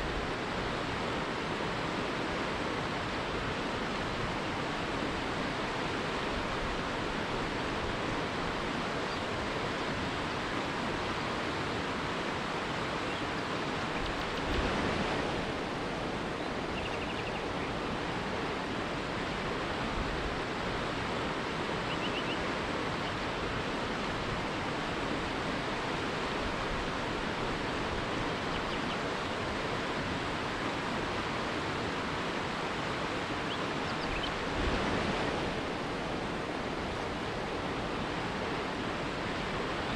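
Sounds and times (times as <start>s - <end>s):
rushing river water: 0.0s - 39.9s
faint bird chirps: 16.7s - 17.8s, 21.9s - 22.4s, 33.5s - 34.4s.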